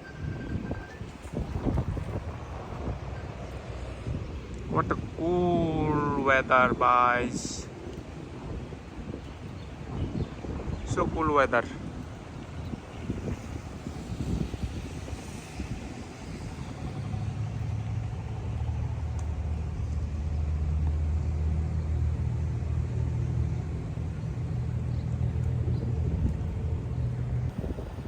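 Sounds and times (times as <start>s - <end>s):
engine droning: 11.4s - 28.0s.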